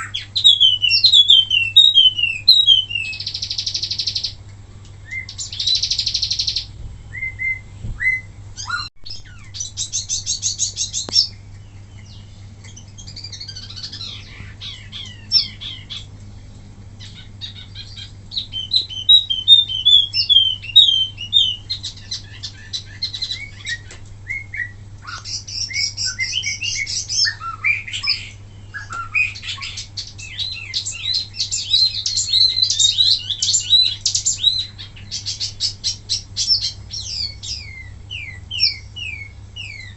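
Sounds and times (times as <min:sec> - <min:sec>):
songbird singing buzzy trills: 0:00.0 - 0:39.9.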